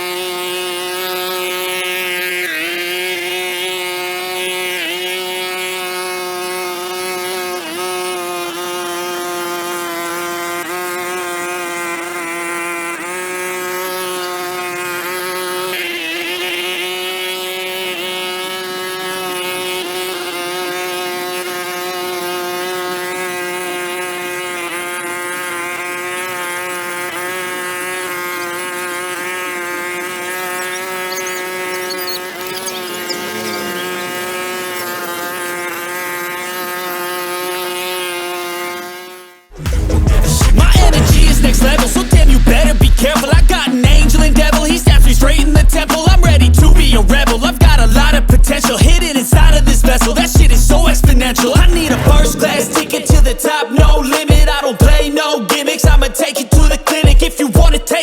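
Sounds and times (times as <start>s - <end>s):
small motor buzzing drone: 0.0s - 39.5s, 40.7s - 57.1s.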